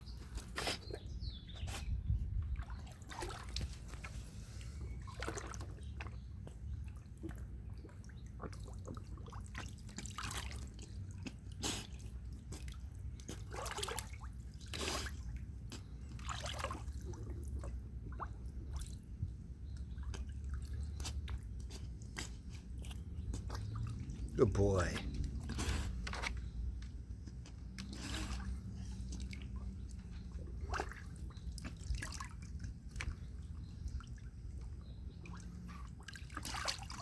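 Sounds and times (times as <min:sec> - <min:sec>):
dog splashing in water: 0:02.6 - 0:06.1, 0:06.8 - 0:19.0, 0:27.6 - 0:33.4, 0:35.2 - 0:37.0.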